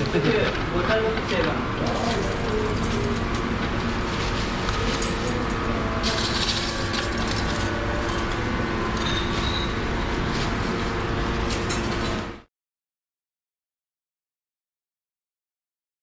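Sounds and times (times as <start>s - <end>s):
mechanical rumble with hum: 0.0s - 12.5s.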